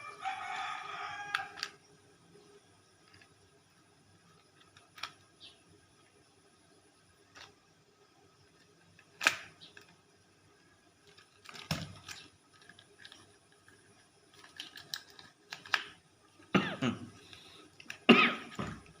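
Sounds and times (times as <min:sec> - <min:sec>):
plastic toy clicking and snapping: 0:01.3 - 0:01.8, 0:03.0 - 0:03.3, 0:04.3 - 0:05.2, 0:07.3 - 0:07.6, 0:08.5 - 0:10.0, 0:11.0 - 0:16.0, 0:17.3 - 0:18.1.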